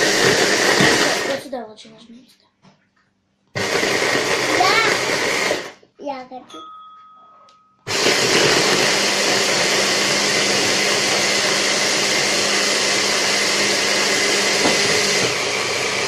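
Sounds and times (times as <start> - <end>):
electric blender grinding: 0.0 - 1.5, 3.6 - 5.8, 7.9 - 16.0.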